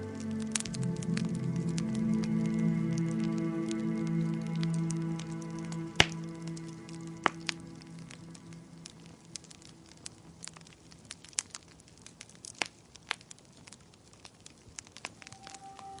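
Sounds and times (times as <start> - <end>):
soft sustained music notes: 0.0 - 10.7, 15.2 - 16.0
wood fire crackling: 0.0 - 16.0
sharp pops and snaps: 0.1 - 16.0.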